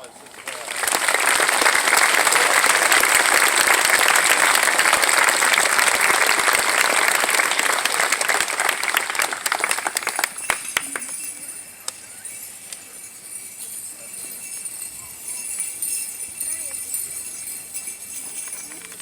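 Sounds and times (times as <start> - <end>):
crowd applauding: 0.0 - 12.8.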